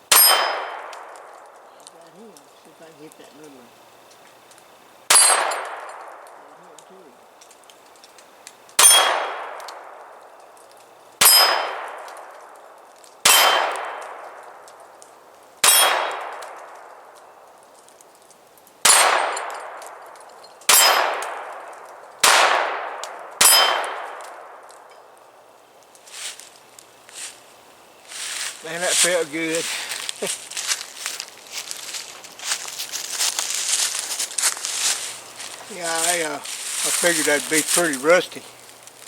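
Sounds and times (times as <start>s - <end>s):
steel targets ringing: 0.1s - 0.9s, 5.1s - 6.0s, 8.8s - 9.4s, 11.2s - 11.9s, 13.2s - 13.9s, 15.6s - 16.2s, 18.8s - 19.7s, 20.7s - 21.2s, 23.4s - 24.0s
pistol shots: 0.1s - 1.4s, 5.1s - 6.3s, 8.8s - 10.0s, 11.2s - 12.4s, 13.2s - 14.6s, 15.6s - 16.8s, 18.8s - 20.0s, 20.7s - 24.7s.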